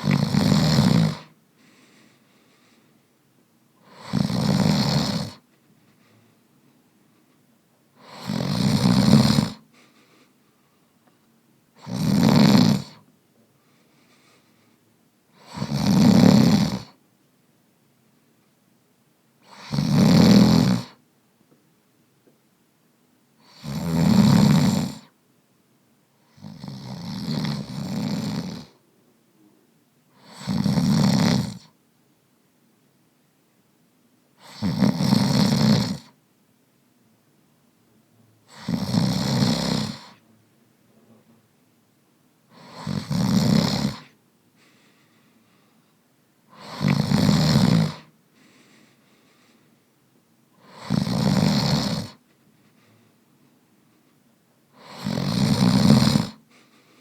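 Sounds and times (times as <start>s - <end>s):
man snoring: 0.0s - 1.4s, 3.8s - 5.4s, 8.0s - 9.6s, 11.8s - 13.0s, 15.3s - 17.0s, 19.4s - 21.0s, 23.4s - 25.1s, 26.3s - 28.8s, 30.2s - 31.7s, 34.4s - 36.2s, 38.4s - 40.2s, 42.5s - 44.2s, 46.5s - 48.1s, 50.6s - 52.2s, 54.7s - 56.4s
faint breathing: 1.2s - 3.2s, 5.5s - 8.1s, 9.6s - 11.2s, 13.4s - 15.4s, 44.0s - 47.0s, 47.9s - 50.0s, 52.1s - 55.0s, 56.3s - 57.0s.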